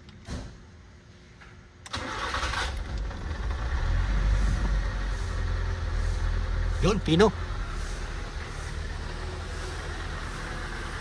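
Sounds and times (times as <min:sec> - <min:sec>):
starter cranking engine: 0:01.9 - 0:03.8
car engine running: 0:02.9 - 0:11.0.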